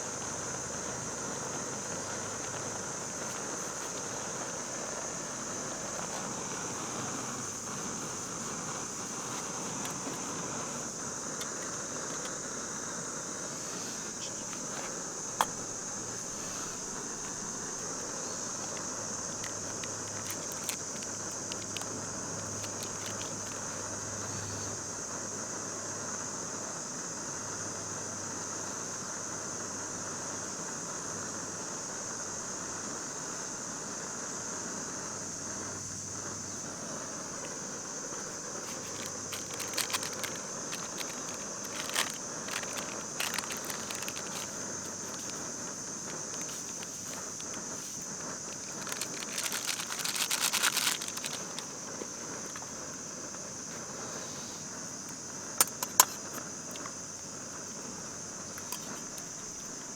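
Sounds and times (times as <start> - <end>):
high-pitched insect chorus: 0.0 - 59.9
rustling handling noises: 1.1 - 12.5, 13.4 - 24.0, 38.2 - 53.8, 58.5 - 59.9.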